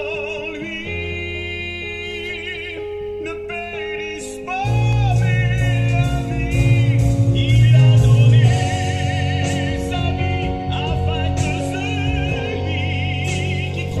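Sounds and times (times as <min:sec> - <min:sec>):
person singing a hymn: 0:00.0 - 0:14.0
band with heavy bass: 0:04.6 - 0:14.0.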